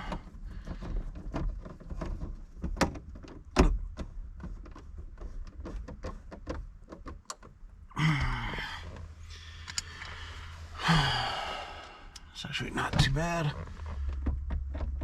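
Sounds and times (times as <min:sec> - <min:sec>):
plastic parts clicking and knocking: 0:00.0 - 0:07.8, 0:08.8 - 0:10.2, 0:12.9 - 0:15.0.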